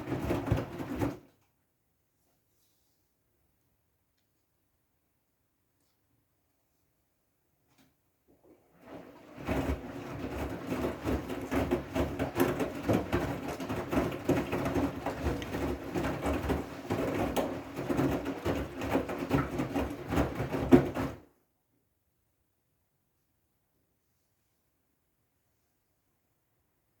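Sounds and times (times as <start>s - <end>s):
washing machine motor hum: 0.0s - 1.3s, 8.3s - 21.3s
drum clicks and knocks: 9.4s - 21.2s.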